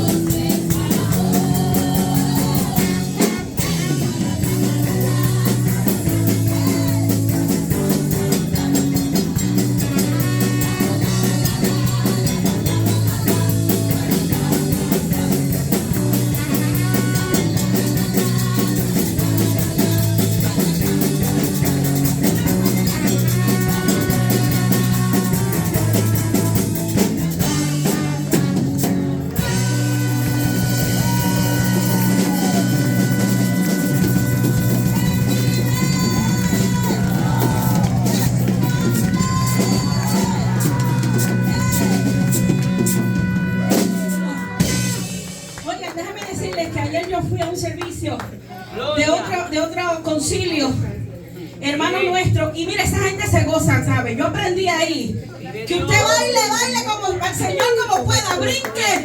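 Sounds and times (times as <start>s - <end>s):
person singing: 0.0s - 21.7s, 29.4s - 44.9s
worship band music: 0.0s - 47.6s.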